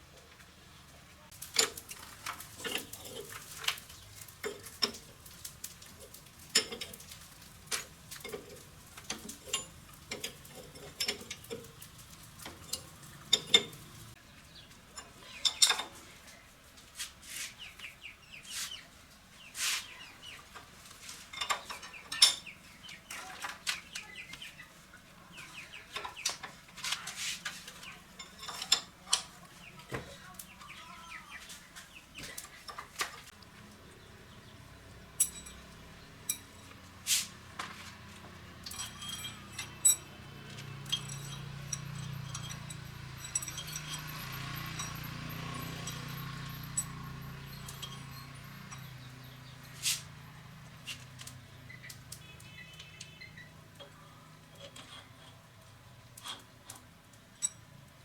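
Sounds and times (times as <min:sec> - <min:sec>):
metal tools clinking: 0:01.4 - 0:14.2, 0:14.9 - 0:16.0, 0:21.1 - 0:24.3, 0:25.9 - 0:31.2, 0:35.1 - 0:52.2, 0:53.8 - 0:57.8.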